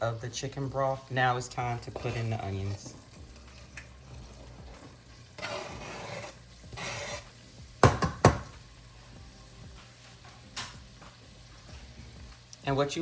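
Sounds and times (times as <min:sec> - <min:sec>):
onions scraped into skillet: 0:01.8 - 0:07.6
sharp knocks against pan: 0:07.8 - 0:08.6.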